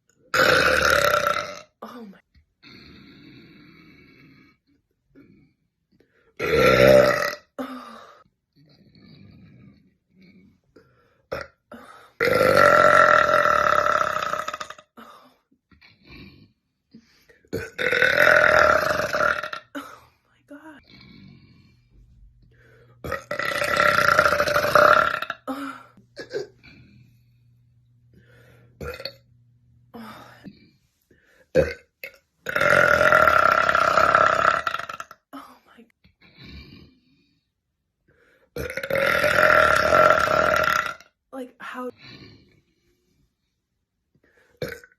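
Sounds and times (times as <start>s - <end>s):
woman belching loudly: 0.3s - 2.0s, 6.4s - 7.6s, 12.2s - 14.9s, 17.5s - 19.8s, 23.0s - 26.5s, 28.8s - 29.2s, 31.6s - 35.1s, 38.6s - 41.1s
woman burping: 0.3s - 2.2s, 6.4s - 7.8s, 17.5s - 20.0s, 23.0s - 26.7s, 28.8s - 29.3s, 31.5s - 35.2s, 38.6s - 41.1s, 44.6s - 44.9s.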